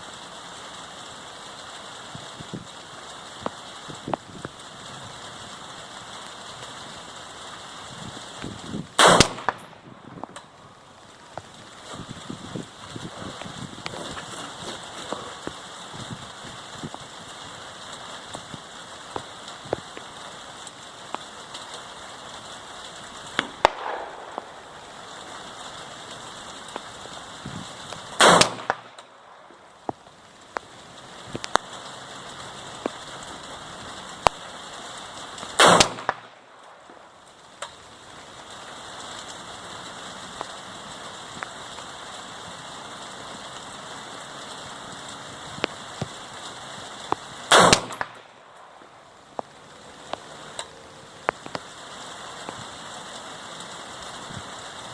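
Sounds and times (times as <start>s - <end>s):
rain hiss: 0.0s - 54.9s
rifle shots: 9.0s - 9.8s, 23.4s - 25.1s, 28.2s - 29.0s, 35.6s - 36.3s, 47.5s - 48.7s.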